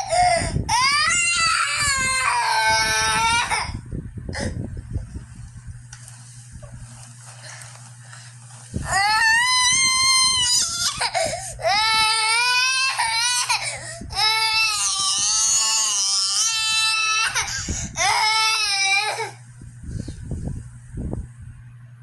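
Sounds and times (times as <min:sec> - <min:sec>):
child crying in high-pitched wails: 0:00.0 - 0:03.8, 0:08.8 - 0:19.4
child gasping breaths: 0:11.1 - 0:11.6.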